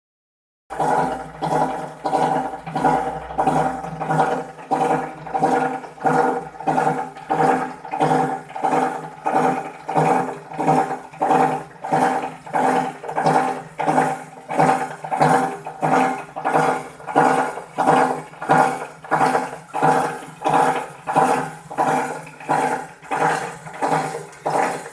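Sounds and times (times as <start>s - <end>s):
grinder machine hum with pulsing beat: 0.7s - 24.9s.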